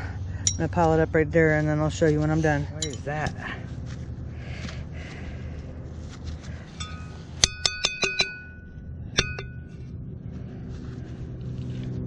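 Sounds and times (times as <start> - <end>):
glass and pottery shards clinking: 0.4 - 0.7, 2.8 - 3.1, 6.8 - 9.7.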